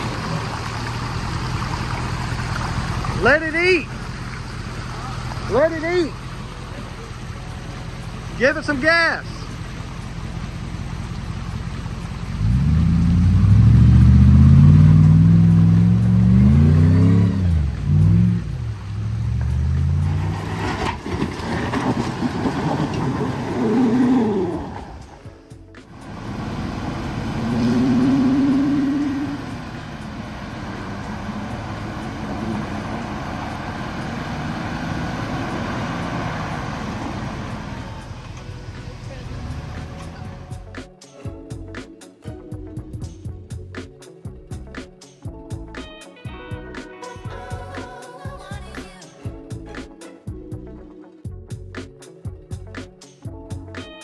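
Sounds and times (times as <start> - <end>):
engine revving under load: 0.0 - 25.3, 25.9 - 40.6.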